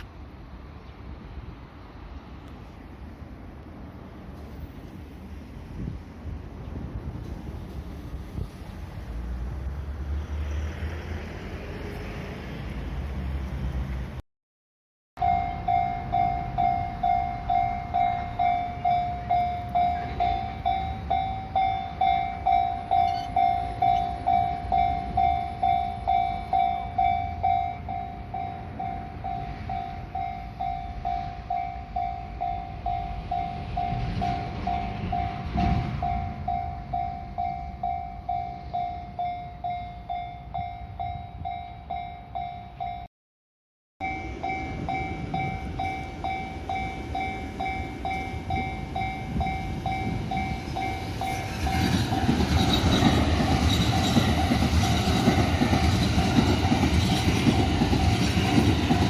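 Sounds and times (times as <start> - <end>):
train passing: 0.0 - 14.2, 15.2 - 43.1, 44.0 - 59.0
level-crossing warning bell: 15.2 - 43.1, 44.0 - 59.0.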